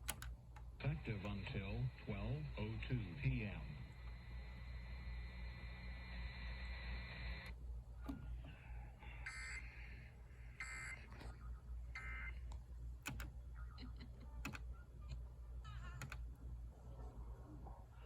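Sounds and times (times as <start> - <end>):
computer keyboard clicks: 0.0 - 0.3, 12.5 - 13.4, 14.4 - 14.6, 16.0 - 16.2
steady low hum: 0.0 - 18.0.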